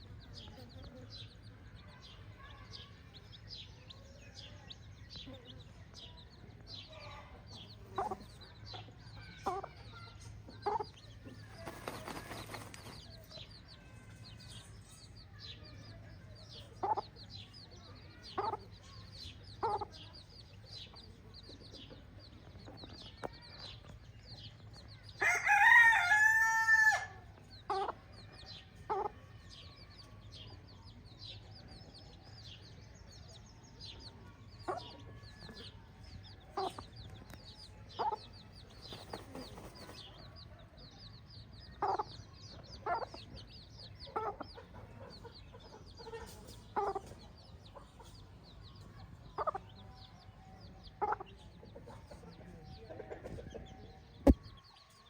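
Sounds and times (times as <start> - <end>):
chickens clucking: 0.0 - 54.9
rooster crowing: 25.2 - 27.2.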